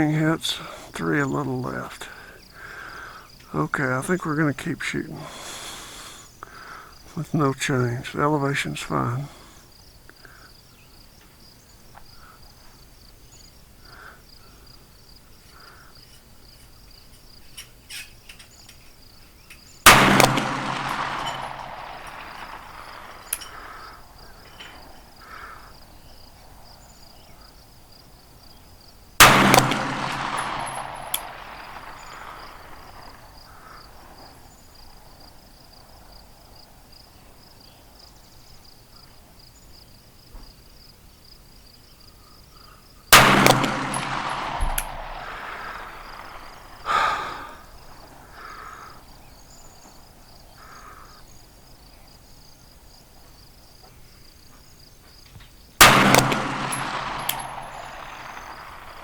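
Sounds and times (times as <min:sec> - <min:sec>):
insects chirring: 0:00.0 - 0:59.0
pistol shots echoing: 0:19.8 - 0:26.2, 0:29.2 - 0:34.4, 0:43.1 - 0:49.6, 0:55.8 - 0:59.0.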